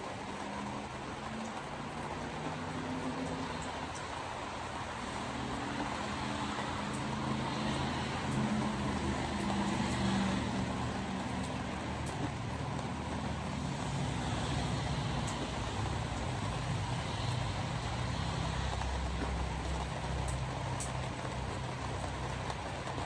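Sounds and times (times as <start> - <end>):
tyres on wet road and rain: 0.0 - 23.0.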